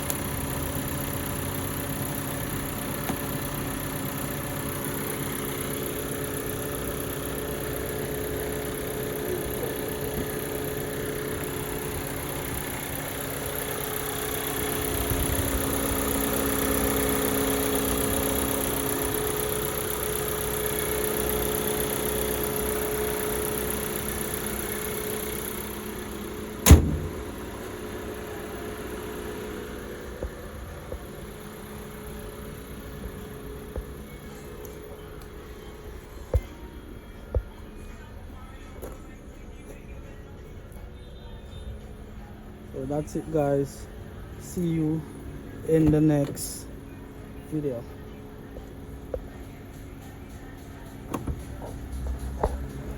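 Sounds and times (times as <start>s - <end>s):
car engine idling: 0.0s - 52.9s
loud thump: 26.6s - 27.4s.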